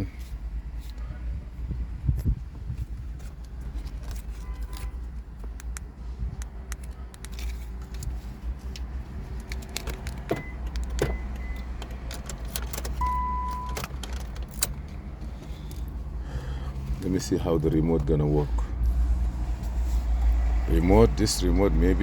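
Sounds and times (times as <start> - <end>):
car keys jangling: 6.8 - 15.9
short electronic beeps: 13.0 - 13.8.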